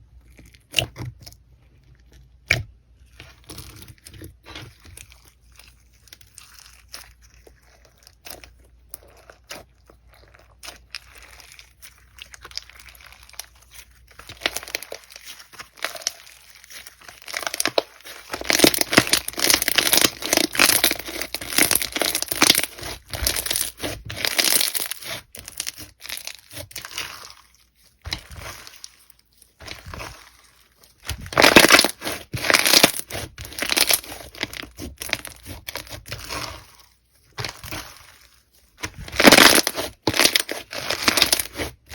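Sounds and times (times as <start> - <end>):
slime crackling and popping: 10.5 - 36.7, 37.3 - 41.9.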